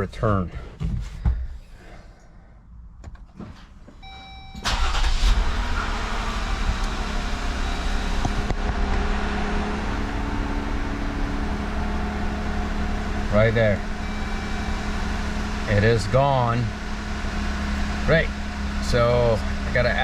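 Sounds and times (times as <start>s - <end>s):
car engine starting and idling: 3.0s - 20.0s
electronic tone: 14.0s - 15.4s.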